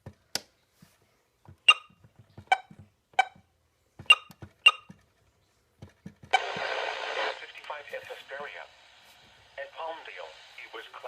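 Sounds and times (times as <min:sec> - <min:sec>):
short electronic button beeps: 0:01.7 - 0:01.9, 0:04.1 - 0:04.9.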